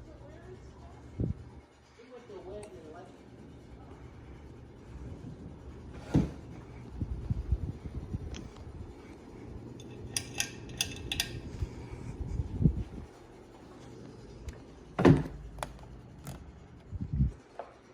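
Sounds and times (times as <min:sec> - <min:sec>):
clinks of hard objects: 0:09.8 - 0:11.4.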